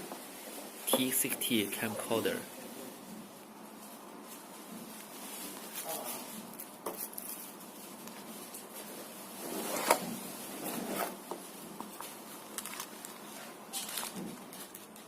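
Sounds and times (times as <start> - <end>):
packaging clicks and rustles: 11.8 - 15.0.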